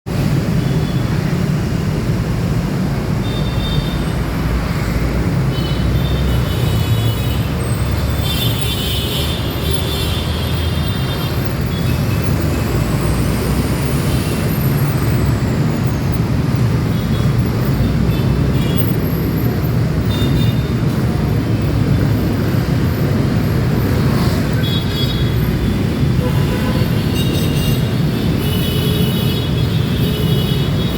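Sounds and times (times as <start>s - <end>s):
rumble of traffic engines: 0.0s - 30.9s
vehicle horns honking: 8.2s - 12.1s, 24.5s - 30.9s.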